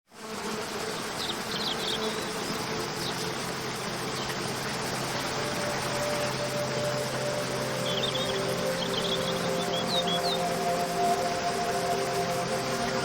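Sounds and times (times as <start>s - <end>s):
waterfall rushing: 2.5s - 13.0s
bird chirps: 7.1s - 10.7s.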